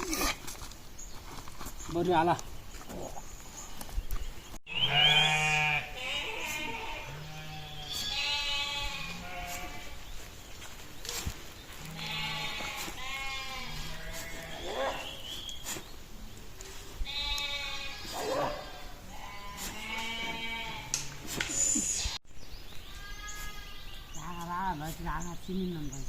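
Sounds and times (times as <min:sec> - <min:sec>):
sheep bleating: 0:04.7 - 0:10.0, 0:11.8 - 0:15.0, 0:17.0 - 0:21.2.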